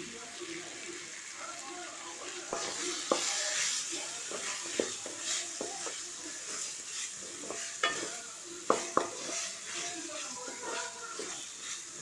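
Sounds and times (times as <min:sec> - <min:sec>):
chicken sizzling in a pan: 0:00.0 - 0:12.0
spoon stirring: 0:02.4 - 0:12.0
spoon knocking against pan: 0:07.4 - 0:11.4.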